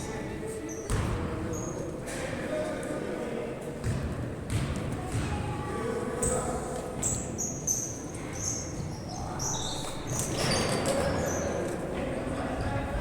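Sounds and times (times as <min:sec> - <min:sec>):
murmur of background noise: 0:00.0 - 0:13.0
shoes squeaking on court floor: 0:06.2 - 0:11.9.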